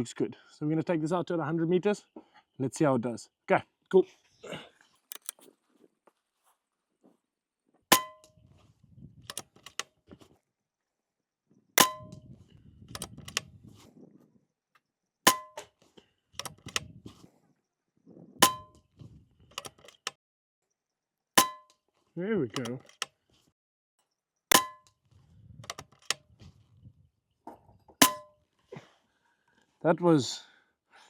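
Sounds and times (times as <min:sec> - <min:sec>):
rifle action clicks: 0:05.1 - 0:05.4, 0:09.3 - 0:09.8, 0:13.0 - 0:13.5, 0:16.4 - 0:16.9, 0:19.6 - 0:20.2, 0:22.6 - 0:23.1, 0:25.6 - 0:26.2.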